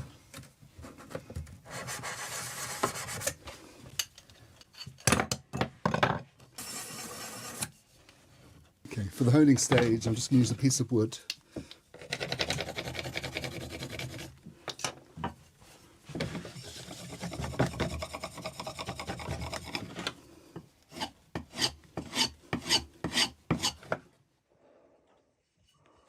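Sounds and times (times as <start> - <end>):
chisel rubbing on wooden block: 12.0 - 14.3.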